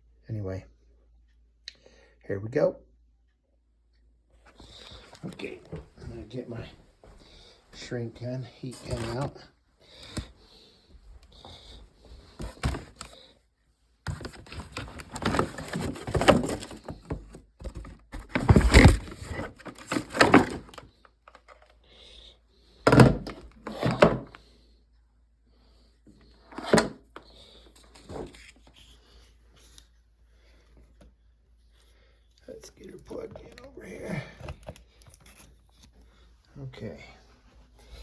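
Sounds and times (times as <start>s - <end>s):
heavy thunks of objects: 14.1s - 20.9s, 22.8s - 24.4s.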